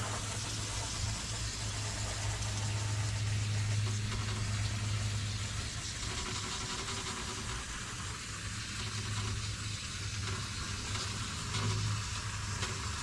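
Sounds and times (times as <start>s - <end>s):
condenser fan hiss: 0.0s - 13.0s.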